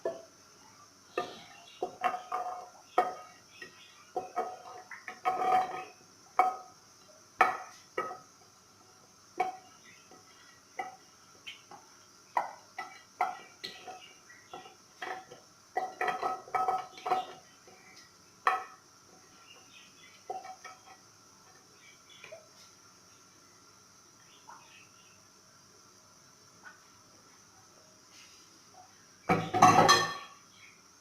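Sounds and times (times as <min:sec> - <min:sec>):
spoon clinking against dishware: 0:29.3 - 0:30.4.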